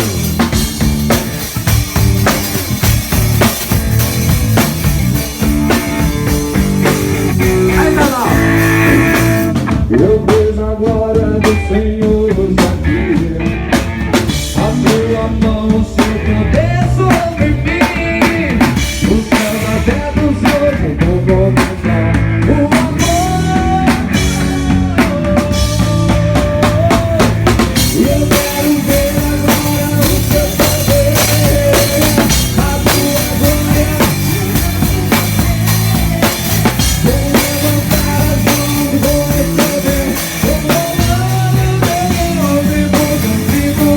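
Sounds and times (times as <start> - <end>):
bending melodic lead line: 0.0 - 10.0
snare and bass drum: 0.0 - 12.9, 14.0 - 43.9
live band playing gospel song: 0.0 - 43.9.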